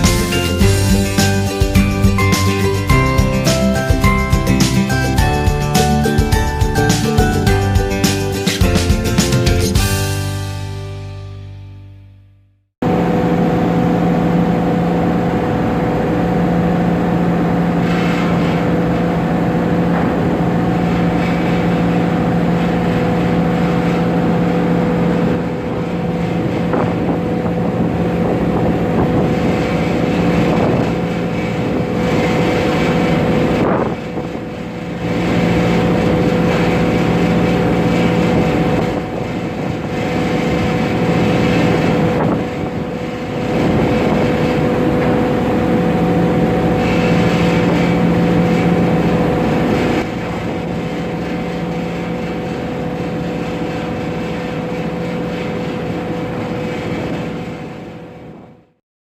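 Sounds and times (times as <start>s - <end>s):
ferry engines droning: 0.0s - 11.6s, 12.8s - 58.4s
wind buffeting microphone: 14.9s - 58.5s.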